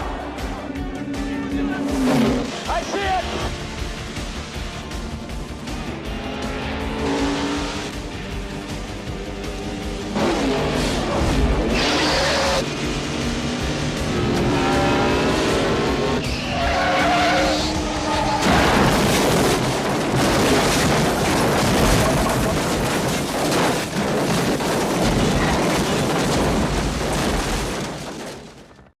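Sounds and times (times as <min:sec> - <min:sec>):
cars crashing: 0:00.0 - 0:09.4, 0:10.0 - 0:28.9
race car engines revving: 0:00.0 - 0:22.4
tyres skidding: 0:00.0 - 0:28.9.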